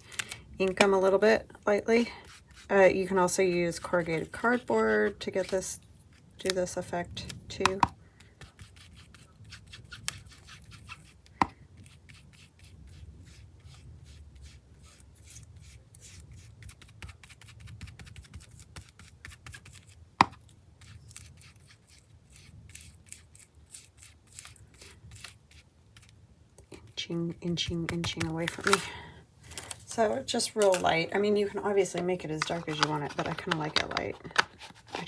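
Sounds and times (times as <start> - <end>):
dabbing and rubbing on paper: 1.8 - 6.5, 8.2 - 26.1, 31.6 - 35.0.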